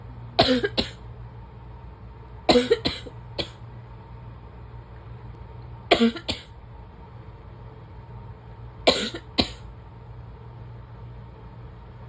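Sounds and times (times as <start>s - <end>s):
person coughing harshly: 0.4s - 1.0s, 2.5s - 3.6s, 5.9s - 6.5s, 8.9s - 9.7s.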